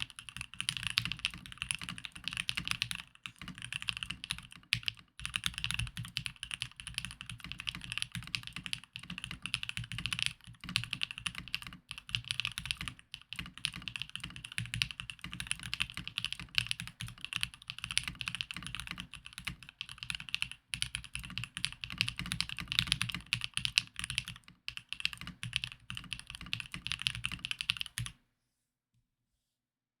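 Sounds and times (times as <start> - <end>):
mechanical keyboard typing: 0.0 - 28.1.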